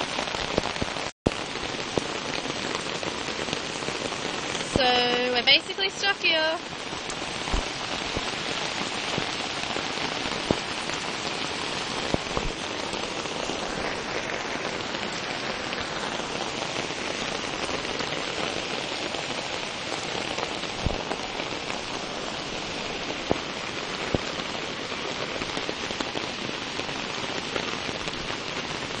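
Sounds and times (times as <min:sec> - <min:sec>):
close raindrop hits: 0:00.0 - 0:29.0
heavy rain falling: 0:00.0 - 0:29.0.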